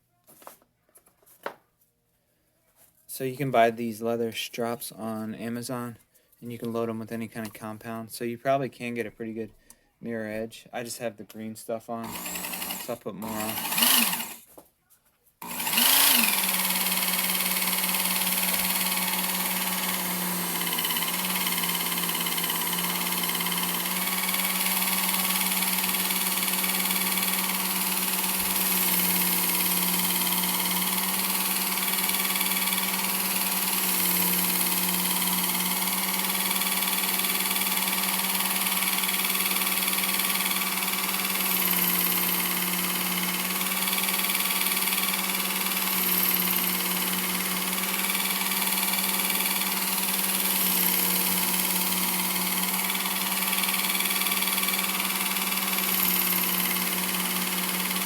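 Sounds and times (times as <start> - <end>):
knife sharpener motor hum: 12.0 - 14.4, 15.4 - 58.0.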